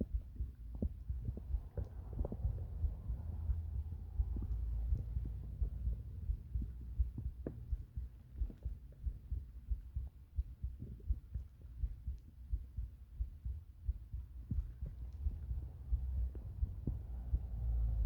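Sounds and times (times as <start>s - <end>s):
heartbeat thumps: 0.0s - 18.0s
steady low hum: 0.0s - 18.0s.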